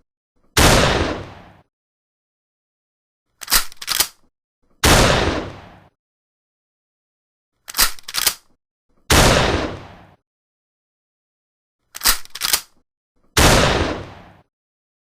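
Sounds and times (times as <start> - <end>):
shotgun shot: 0.6 - 1.6, 4.8 - 5.9, 9.1 - 10.2, 13.4 - 14.5
shotgun action clacking: 3.4 - 4.2, 7.7 - 8.5, 12.0 - 12.8.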